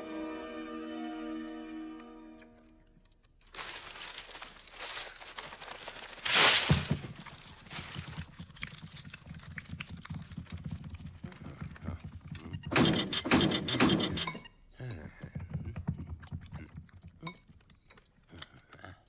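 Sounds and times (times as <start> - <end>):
mechanical clattering and rattling: 12.0 - 14.5.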